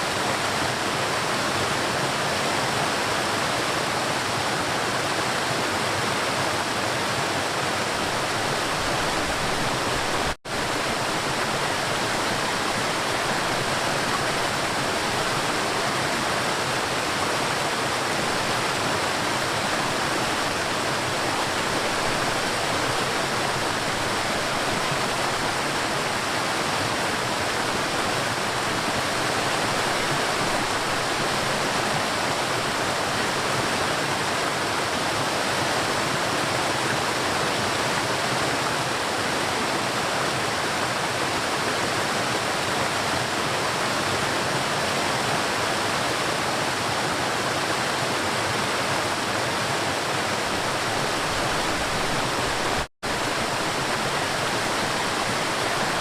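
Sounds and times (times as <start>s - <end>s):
river water rushing: 0.0s - 56.0s.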